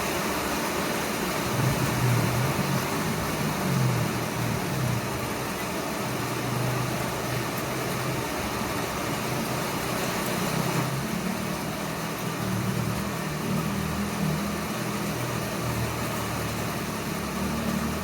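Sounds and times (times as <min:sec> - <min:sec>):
heavy rain: 0:00.0 - 0:18.0
strong wind rumble: 0:01.4 - 0:08.3.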